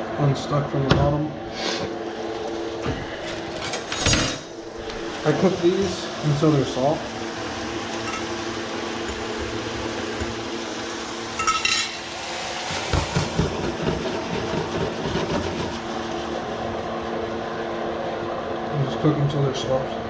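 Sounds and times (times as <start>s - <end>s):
steady hum: 0.0s - 20.0s
food sizzling in a pan: 5.1s - 13.8s.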